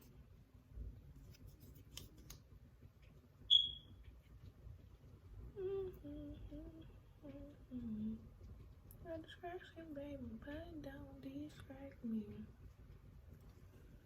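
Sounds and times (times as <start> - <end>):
faint handling sounds: 0.0 - 3.2
short high-pitched squeak: 3.5 - 3.9
woman humming: 5.5 - 8.3.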